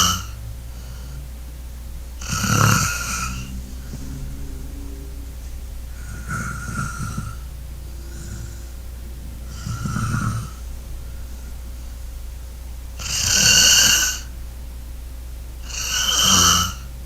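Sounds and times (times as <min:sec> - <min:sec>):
steady low hum: 0:00.0 - 0:17.0
person snoring: 0:02.2 - 0:11.5, 0:13.0 - 0:14.3, 0:15.6 - 0:16.8.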